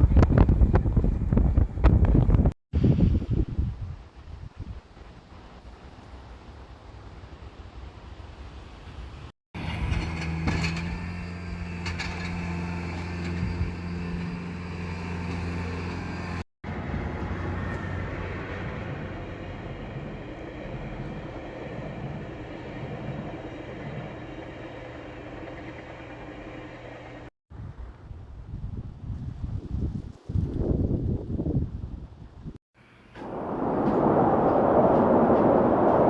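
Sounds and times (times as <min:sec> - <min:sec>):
low mechanical hum: 0:09.6 - 0:27.3
wind rushing: 0:33.2 - 0:36.0.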